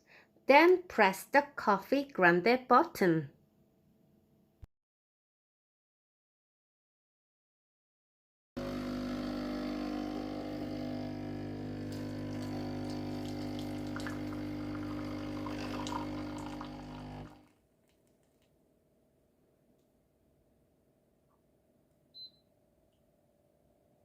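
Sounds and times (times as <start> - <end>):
coffee machine pump humming: 8.6 - 17.5
coffee pouring into cup: 8.6 - 17.5.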